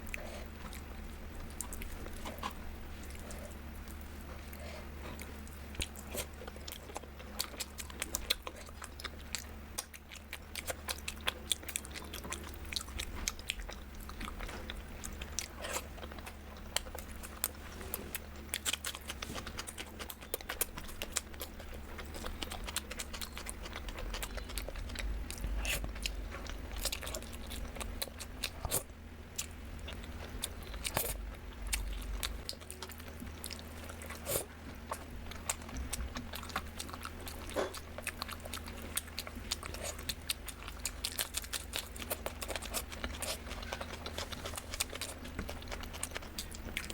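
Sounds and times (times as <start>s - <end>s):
crisp crunching and chewing: 0.0s - 46.9s
steady low hum: 0.0s - 46.9s.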